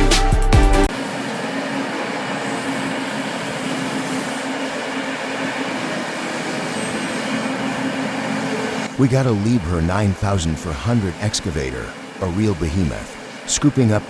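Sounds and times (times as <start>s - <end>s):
electronic music with heavy bass: 0.0s - 0.9s
heavy diesel machinery running: 0.0s - 14.0s.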